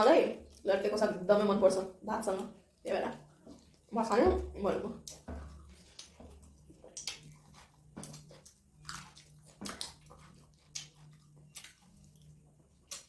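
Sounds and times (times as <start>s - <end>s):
people chewing: 5.0s - 13.0s
mouth smacks and clicks: 6.8s - 11.8s.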